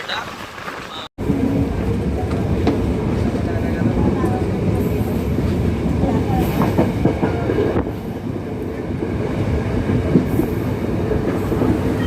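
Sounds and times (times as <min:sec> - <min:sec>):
train wheels clattering on rails: 0:01.8 - 0:12.0.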